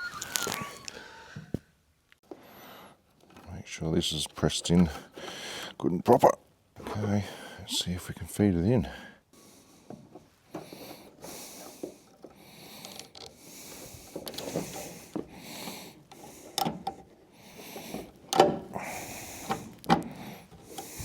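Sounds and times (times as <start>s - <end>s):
plastic tubing rustling and scraping: 0.0s - 1.0s, 9.7s - 21.0s
sharp clicks and knocks: 11.6s - 17.1s, 17.8s - 21.0s.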